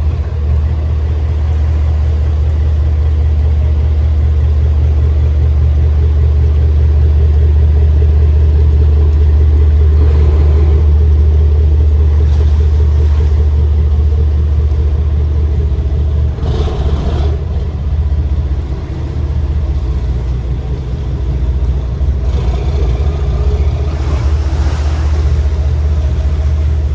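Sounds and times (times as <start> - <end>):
diesel boat engines rumbling: 0.0 - 26.9.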